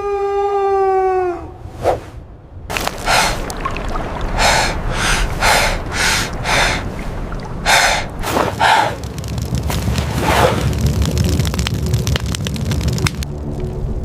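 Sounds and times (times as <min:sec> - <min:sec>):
steady low rumble: 0:02.1 - 0:14.0
person panting hard: 0:03.0 - 0:03.4, 0:04.4 - 0:06.9, 0:07.6 - 0:09.0.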